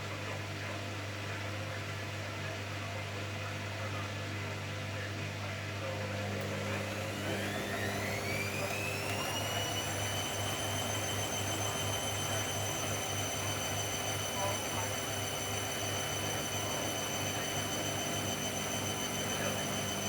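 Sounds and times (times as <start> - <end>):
washing machine spinning: 5.8 - 20.0.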